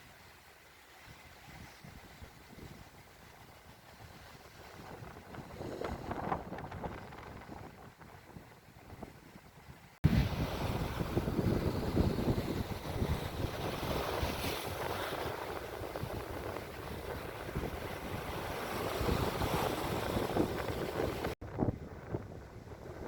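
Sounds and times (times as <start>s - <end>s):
wind buffeting microphone: 1.0s - 23.0s
open sea rushing: 10.0s - 21.4s.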